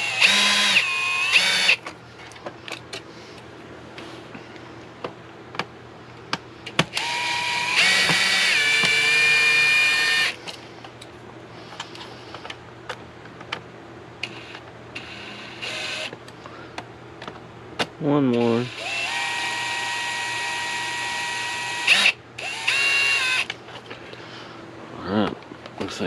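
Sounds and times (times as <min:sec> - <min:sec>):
power driver motor whining: 0:00.0 - 0:01.8, 0:06.9 - 0:10.4, 0:14.2 - 0:16.1, 0:18.3 - 0:23.5.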